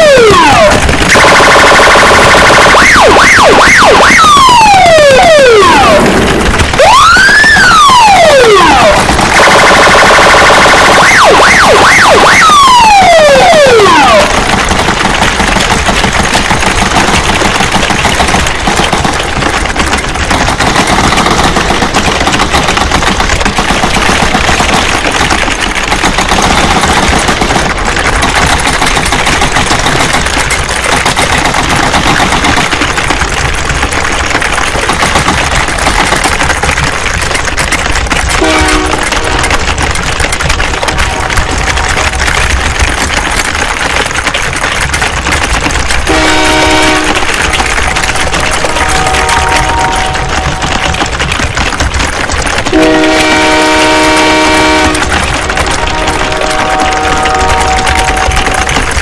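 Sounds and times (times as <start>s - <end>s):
blaring alarm-like horn: 0.0s - 6.2s, 7.6s - 9.5s, 10.8s - 14.5s, 38.4s - 39.5s, 46.1s - 47.4s, 48.6s - 50.8s, 52.7s - 58.7s
sirens wailing: 0.0s - 36.3s, 37.0s - 42.9s, 45.5s - 51.2s, 52.6s - 59.0s
dense rattling din: 0.0s - 59.0s.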